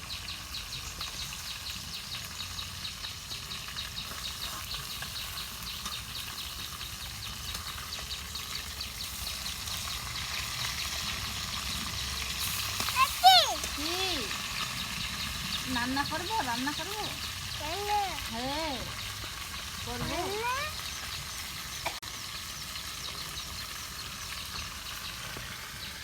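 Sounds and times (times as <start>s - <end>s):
fish frying in hot oil: 0.0s - 26.0s.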